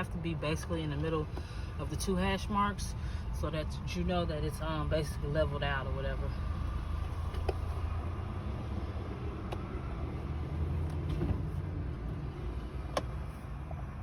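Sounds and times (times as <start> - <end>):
car rumble: 0.0 - 14.0
car seat clicks: 7.2 - 7.6.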